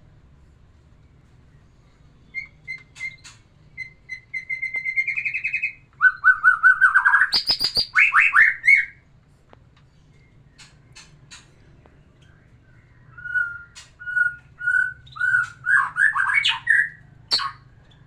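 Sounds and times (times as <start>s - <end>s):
bird singing whistles and trills: 2.3s - 9.0s, 12.6s - 18.0s.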